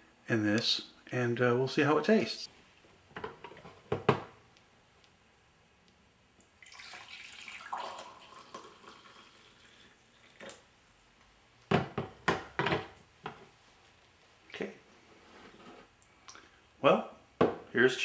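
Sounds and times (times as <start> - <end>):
coffee pouring into mug: 6.5 - 10.7.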